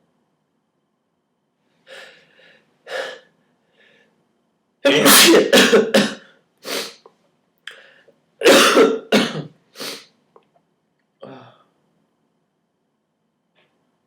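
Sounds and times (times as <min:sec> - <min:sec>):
person sneezing: 0:04.9 - 0:07.0, 0:08.4 - 0:10.1.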